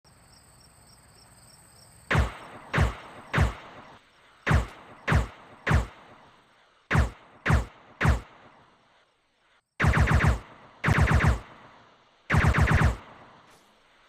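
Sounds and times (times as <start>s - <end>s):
muffled gunshots: 2.1s - 8.8s, 9.8s - 13.5s.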